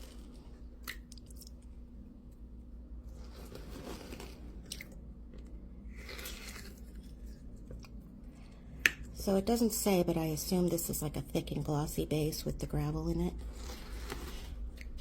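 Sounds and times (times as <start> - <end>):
slime crunching and squishing: 3.0 - 8.0.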